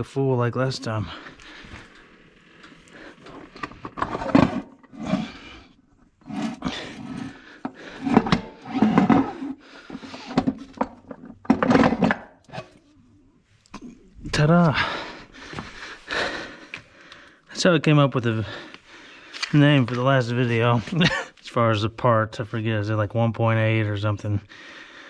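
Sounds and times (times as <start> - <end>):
metal scraping and knocking: 6.2 - 12.7.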